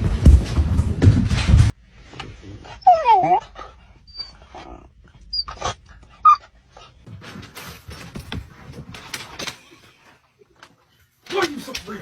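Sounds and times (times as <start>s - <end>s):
noisy rustling: 0.0s - 2.4s
dog whimpering: 2.6s - 6.5s.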